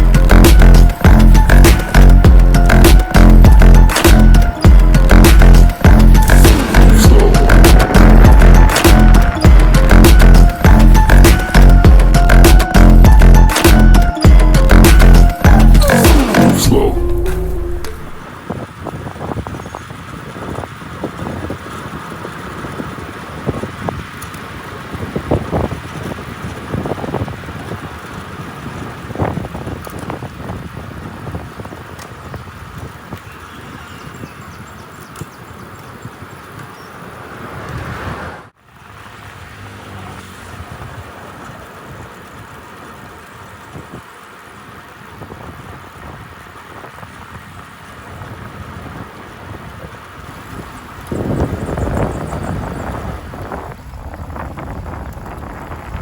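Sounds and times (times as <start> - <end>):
road noise rumble: 0.0 - 56.0
wind buffeting microphone: 18.1 - 38.5, 40.4 - 56.0.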